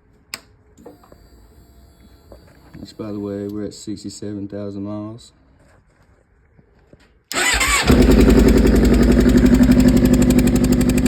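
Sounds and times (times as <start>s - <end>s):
electric starter cranking: 7.3s - 10.8s
motorcycle engine idling: 7.4s - 11.0s.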